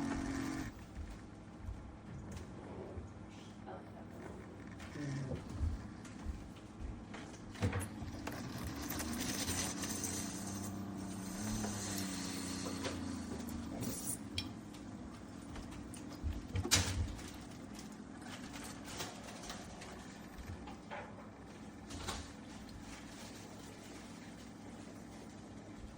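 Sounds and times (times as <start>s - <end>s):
small motor humming: 0.0s - 0.8s, 8.0s - 14.3s.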